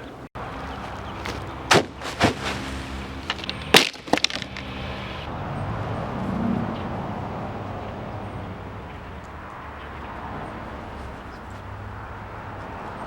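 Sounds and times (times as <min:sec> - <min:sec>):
sharp knocks and cracks: 0:00.8 - 0:05.0.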